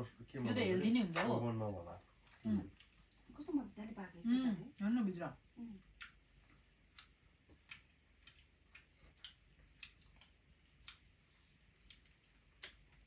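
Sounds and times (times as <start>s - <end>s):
mouth smacks of chewing: 2.2s - 3.4s, 5.9s - 13.0s.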